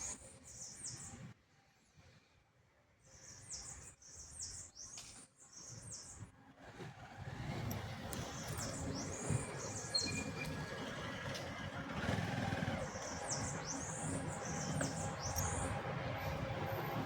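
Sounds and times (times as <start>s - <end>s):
small birds chirping: 8.2s - 11.0s, 12.8s - 17.0s.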